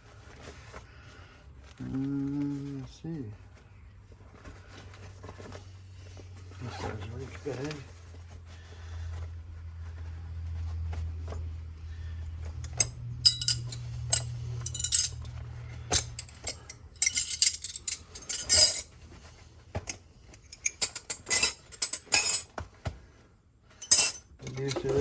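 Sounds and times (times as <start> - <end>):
low steady hum: 5.4 - 22.5, 23.8 - 25.0
metal wrenches clinking: 12.6 - 18.9, 19.9 - 22.5, 23.8 - 25.0.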